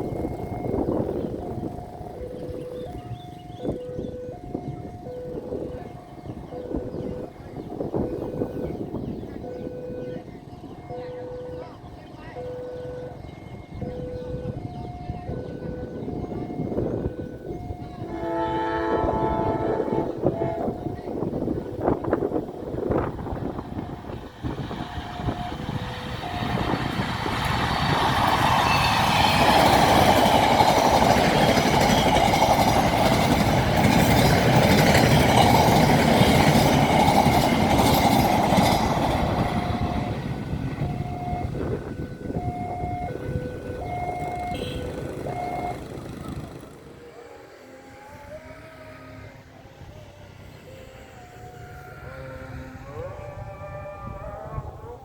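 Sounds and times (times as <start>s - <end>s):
diesel train passing: 0.0s - 55.0s.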